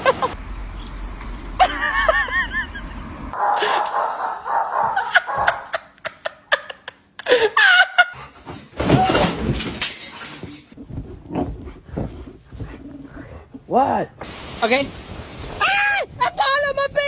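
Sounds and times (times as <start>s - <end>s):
person laughing: 0.0s - 0.4s, 1.6s - 8.2s.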